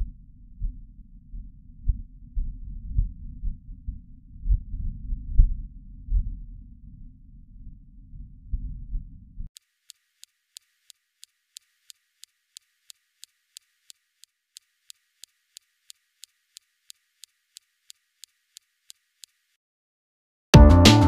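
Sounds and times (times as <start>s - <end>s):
laser zapping clicks: 9.6s - 19.6s.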